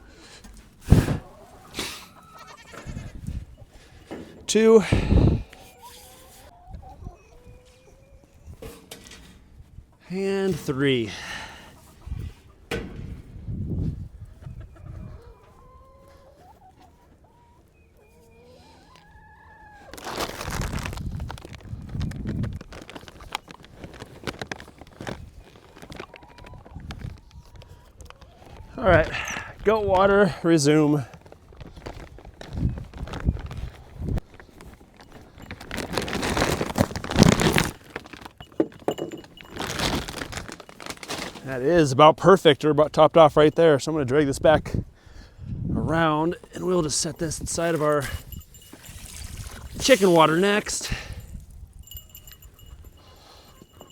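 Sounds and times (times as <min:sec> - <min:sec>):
chickens clucking: 0:00.2 - 0:04.4, 0:05.2 - 0:08.9, 0:11.6 - 0:20.0, 0:26.0 - 0:29.0
chicken calls: 0:00.2 - 0:08.6, 0:14.0 - 0:20.3, 0:25.4 - 0:29.2
loud rustling and scraping: 0:31.2 - 0:41.6
hose water splashing into tub: 0:48.8 - 0:50.9.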